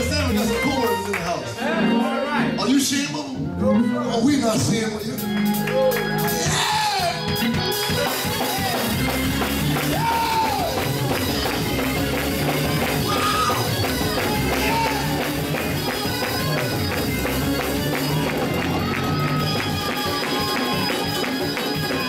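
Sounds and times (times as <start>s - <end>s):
church praise music: 0.0s - 22.0s
drum kit: 4.5s - 22.0s.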